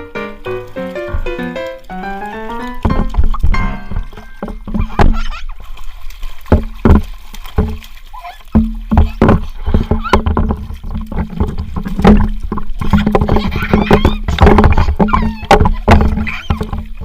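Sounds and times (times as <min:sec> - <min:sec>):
water splashing in a pool: 0:00.0 - 0:17.0.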